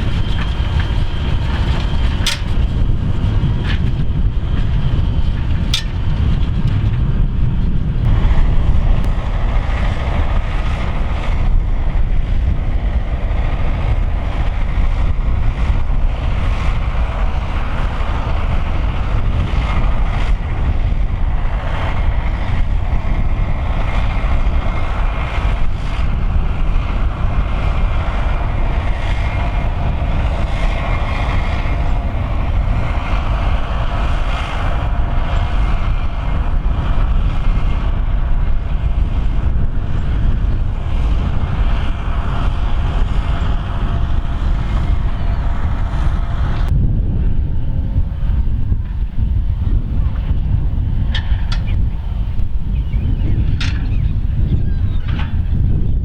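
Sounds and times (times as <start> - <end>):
tractor engine under load: 8.1 - 37.6.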